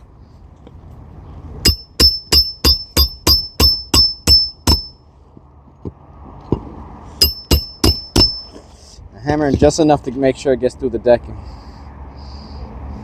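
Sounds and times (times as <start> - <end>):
hammer striking metal tool: 1.6 - 5.0, 7.2 - 8.6.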